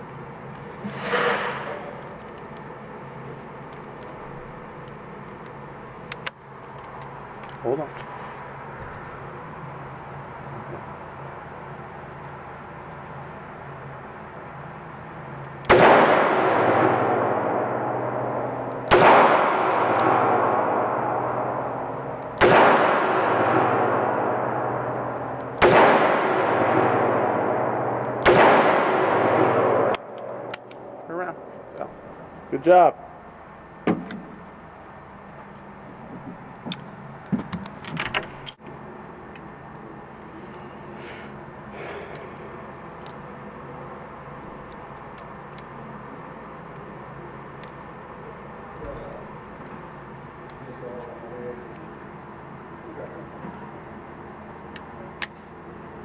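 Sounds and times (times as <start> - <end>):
steady background noise: 0.0 - 56.0
revolver shots with echo: 15.7 - 31.7.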